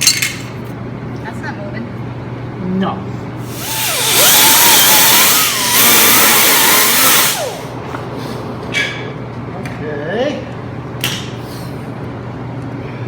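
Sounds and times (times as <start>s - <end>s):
angle grinder grinding metal: 3.4s - 7.7s.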